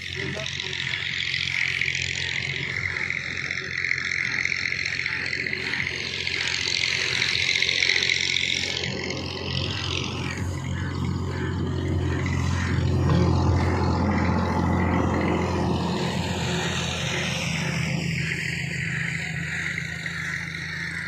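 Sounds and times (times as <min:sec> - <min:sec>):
vehicle engine running: 0:00.0 - 0:21.0.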